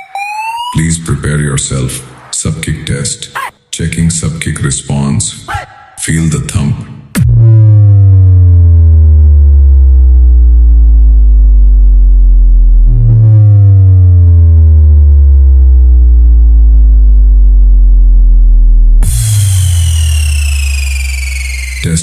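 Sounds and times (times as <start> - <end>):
deep sub-bass booms: 7.1 - 21.9.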